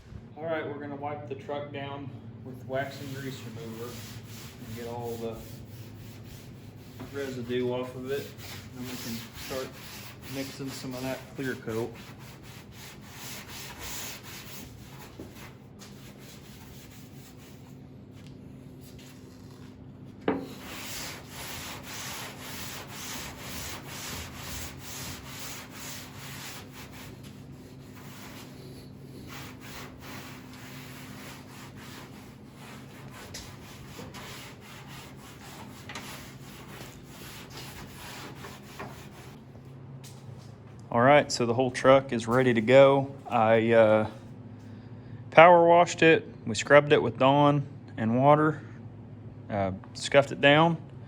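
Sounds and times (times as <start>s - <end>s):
rag rubbing painted metal: 2.9s - 17.7s, 20.3s - 39.4s.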